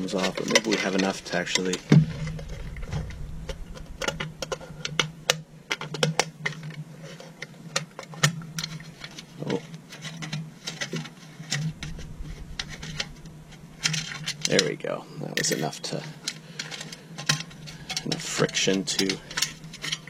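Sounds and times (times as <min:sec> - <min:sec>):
steady low hum: 0:00.0 - 0:20.0
tool clicking and scraping: 0:15.5 - 0:20.0.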